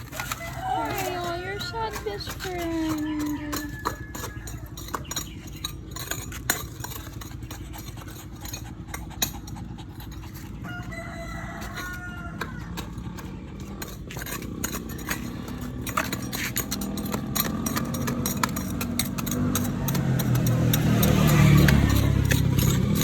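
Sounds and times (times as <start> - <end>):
engine: 0.0 - 23.0
rooster crowing: 0.1 - 5.0, 10.6 - 13.0.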